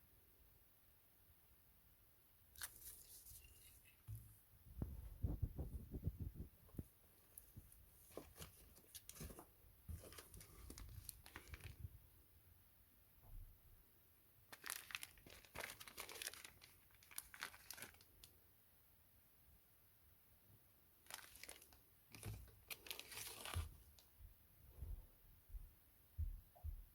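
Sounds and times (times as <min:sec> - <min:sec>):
packaging crinkling and tearing: 0:10.0 - 0:11.9, 0:14.5 - 0:18.3, 0:21.0 - 0:24.0.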